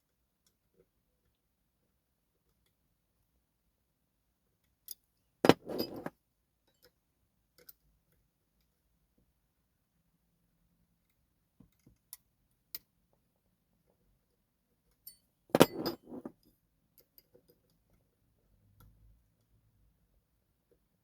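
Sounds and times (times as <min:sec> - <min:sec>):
metal on metal clatter: 0:05.5 - 0:06.1, 0:15.6 - 0:16.3
small metal clicks of lock picks: 0:07.6 - 0:08.7.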